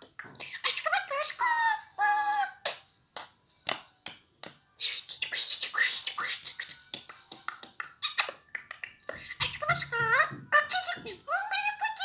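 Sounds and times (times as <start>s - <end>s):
budgerigar chattering: 4.8s - 12.0s.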